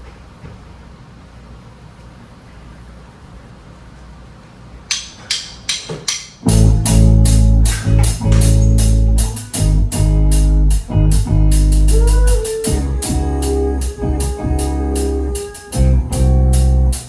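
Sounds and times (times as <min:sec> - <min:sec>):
drumstick clicks: 0:04.9 - 0:06.6
live rock band playing: 0:06.5 - 0:17.0.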